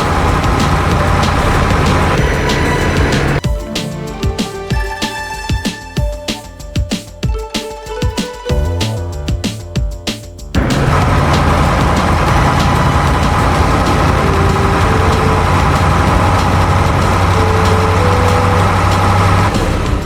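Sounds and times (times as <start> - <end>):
diesel machinery engine hum: 0.0 - 3.4, 10.6 - 20.0.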